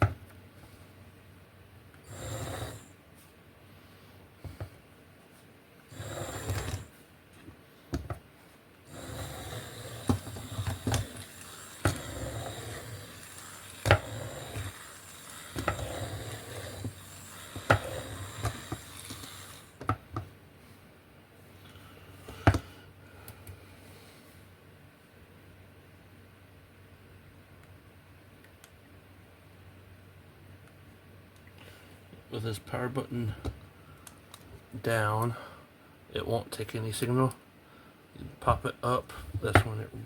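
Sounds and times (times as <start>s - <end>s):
remote-control car motors running: 5.9s - 6.9s, 8.9s - 19.8s.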